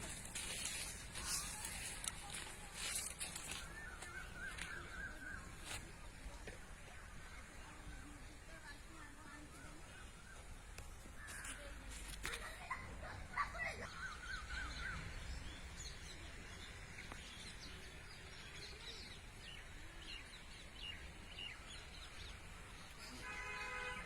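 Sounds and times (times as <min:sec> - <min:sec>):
birds chirping: 0:00.0 - 0:12.8.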